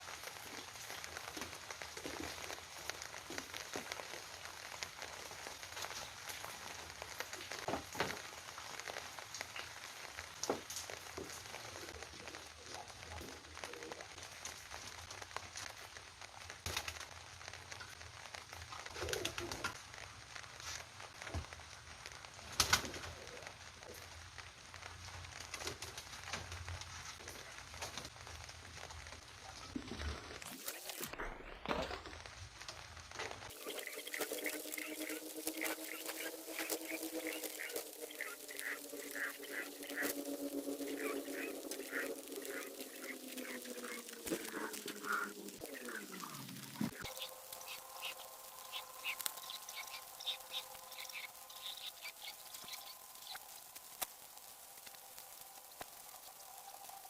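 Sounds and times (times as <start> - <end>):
pigeons cooing: 33.5 - 52.9.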